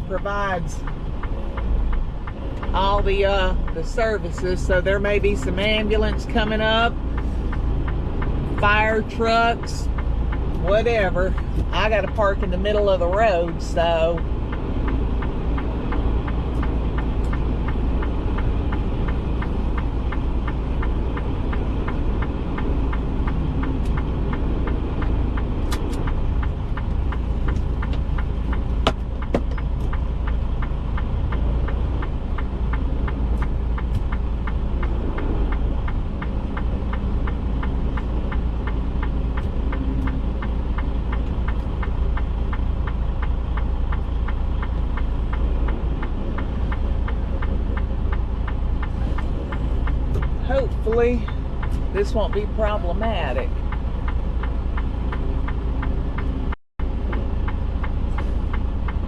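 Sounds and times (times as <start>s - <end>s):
diesel engine clattering: 0.0s - 59.0s
sharp clicks: 14.2s - 50.4s.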